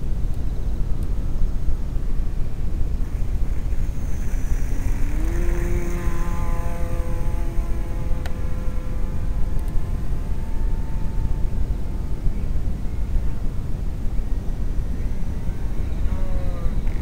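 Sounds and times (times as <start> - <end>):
wind rumble on microphone: 0.0 - 17.0
model plane motor whining: 3.1 - 13.2, 15.2 - 17.0.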